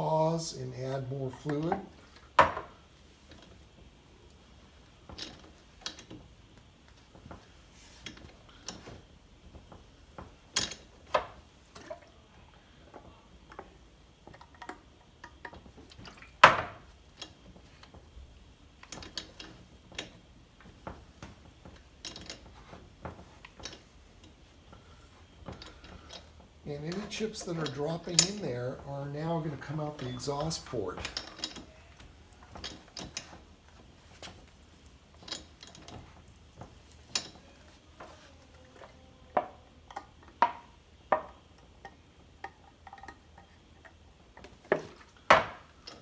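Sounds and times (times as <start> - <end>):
hand tools clicking and knocking: 1.4 - 3.5, 25.4 - 46.0.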